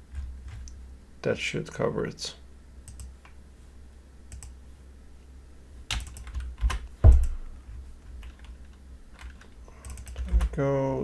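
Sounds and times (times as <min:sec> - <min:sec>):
typing on keyboard: 0:02.9 - 0:03.1, 0:05.9 - 0:07.4, 0:08.2 - 0:10.5.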